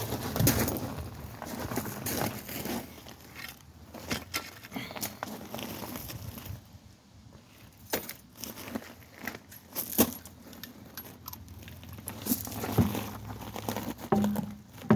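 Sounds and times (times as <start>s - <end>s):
metal tools clicking and knocking: 14.1s - 14.9s.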